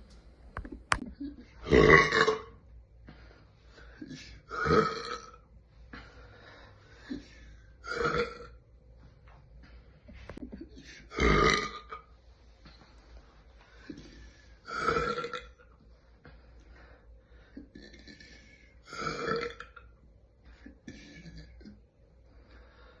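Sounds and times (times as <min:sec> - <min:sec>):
person burping: 0:01.6 - 0:02.6, 0:04.0 - 0:05.4, 0:07.8 - 0:08.6, 0:10.5 - 0:12.1, 0:14.7 - 0:15.6, 0:17.6 - 0:19.9, 0:20.8 - 0:21.8.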